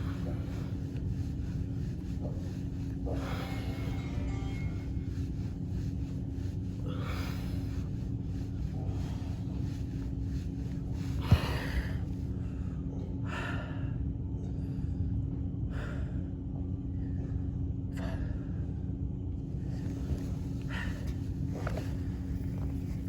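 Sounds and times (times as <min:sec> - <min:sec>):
man breathing hard: 0:00.0 - 0:17.4, 0:19.7 - 0:23.0
steady low hum: 0:00.0 - 0:23.0.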